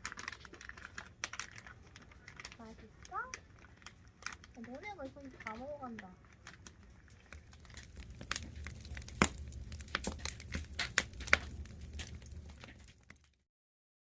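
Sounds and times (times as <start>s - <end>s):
plastic packaging crinkling: 0.0s - 13.4s
sharp clicks and taps: 7.5s - 13.0s.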